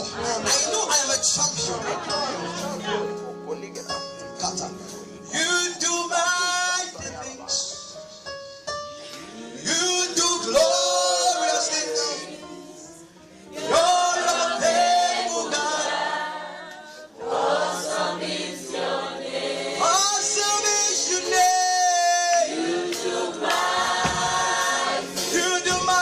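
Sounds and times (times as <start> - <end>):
choir singing worship song: 0.0 - 3.0, 9.1 - 26.0.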